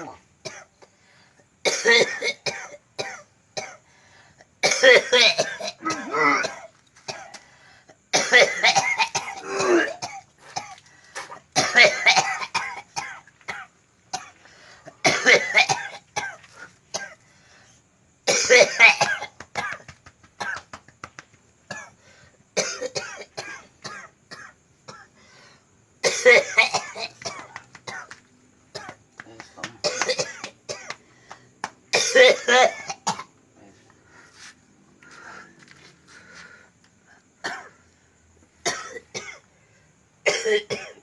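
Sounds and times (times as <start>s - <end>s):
man coughing in harsh fits: 1.6s - 3.8s, 4.6s - 7.3s, 8.1s - 14.3s, 15.0s - 17.2s, 18.3s - 20.6s, 22.6s - 25.1s, 26.0s - 28.1s, 29.6s - 31.0s, 31.9s - 33.3s, 37.4s - 37.7s, 38.6s - 39.4s, 40.3s - 41.0s.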